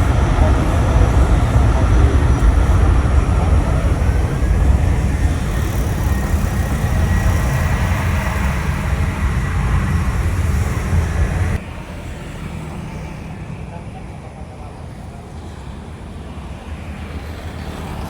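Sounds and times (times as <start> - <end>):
faint high whine: 0.0 - 11.6
jet engines roaring: 0.0 - 18.0.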